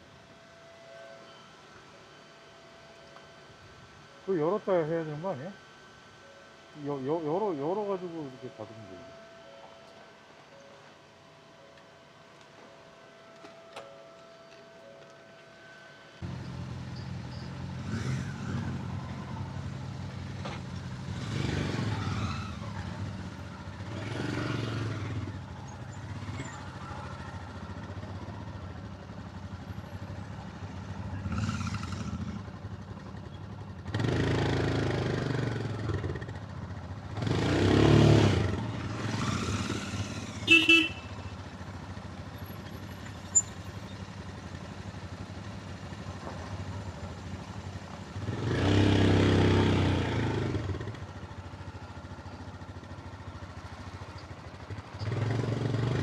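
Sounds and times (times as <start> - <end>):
motorcycle engine revving: 16.2 - 56.0
horn beeps: 40.4 - 41.5.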